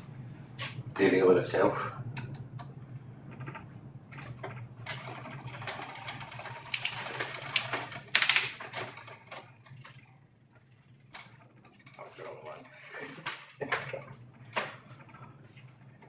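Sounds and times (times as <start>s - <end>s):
bicycle drivetrain clicking: 3.3s - 16.0s.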